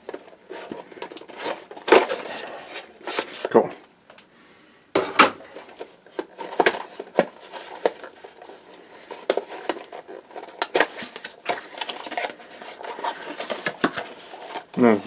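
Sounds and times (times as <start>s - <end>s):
packaging being opened by hand: 0.0s - 3.6s, 5.5s - 15.0s.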